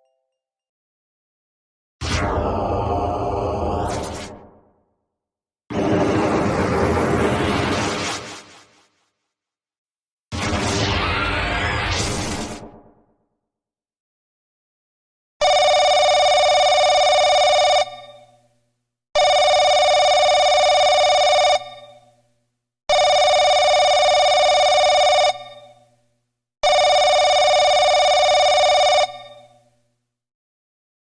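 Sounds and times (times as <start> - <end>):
telephone ringing: 15.4 - 18.3, 19.2 - 22.1, 22.9 - 25.7, 26.6 - 29.6.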